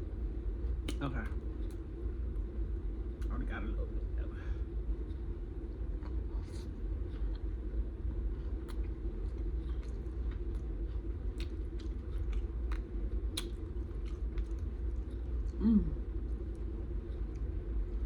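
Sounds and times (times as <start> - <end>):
steady low hum: 0.0 - 18.0
chewing and mouth smacking: 0.6 - 1.9, 5.8 - 18.0.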